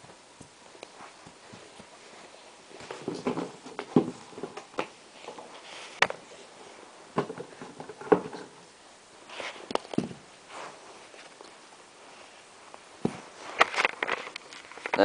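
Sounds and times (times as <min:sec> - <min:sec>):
items knocking and clicking: 0:02.8 - 0:06.2, 0:07.1 - 0:08.6.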